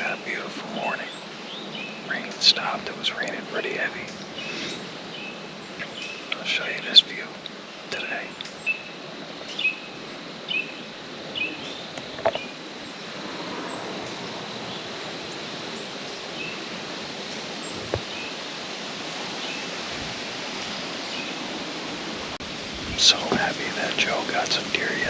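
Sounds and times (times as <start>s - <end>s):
wind rushing through trees: 0.0s - 25.0s
faint clicks: 3.1s - 3.4s.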